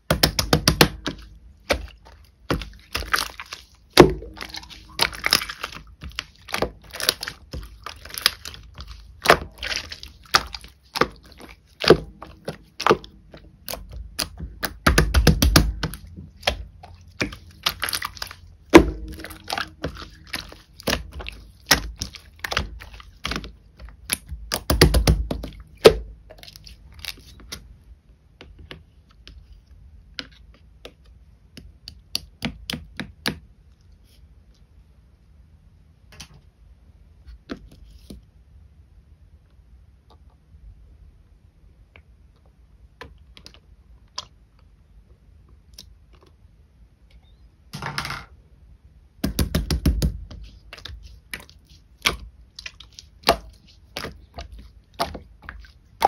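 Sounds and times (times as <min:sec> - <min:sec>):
slime squished by hand: 0:00.1 - 0:27.7, 0:49.3 - 0:56.0.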